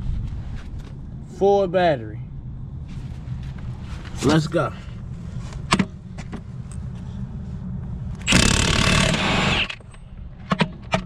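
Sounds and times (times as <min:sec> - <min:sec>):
low steady rumble: 0:00.0 - 0:11.0
impact wrench hammering: 0:08.3 - 0:09.7.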